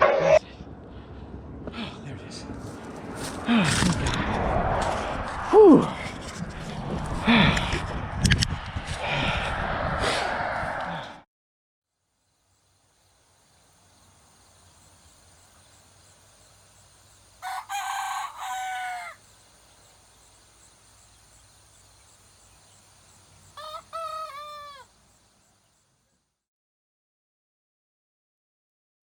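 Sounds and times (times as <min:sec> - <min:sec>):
rooster crowing: 0:17.4 - 0:19.4, 0:23.4 - 0:25.0.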